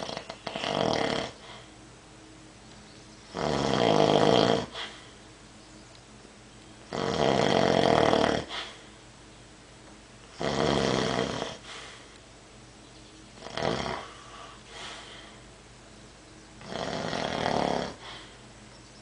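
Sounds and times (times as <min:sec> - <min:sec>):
person snoring: 0:00.0 - 0:01.7, 0:03.4 - 0:05.0, 0:06.9 - 0:08.8, 0:10.3 - 0:12.0, 0:13.4 - 0:15.3, 0:16.6 - 0:18.3.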